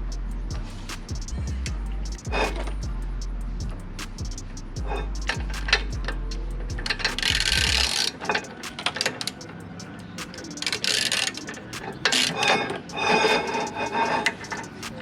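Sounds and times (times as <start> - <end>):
metallic clicking of hand tools: 7.1 - 15.0.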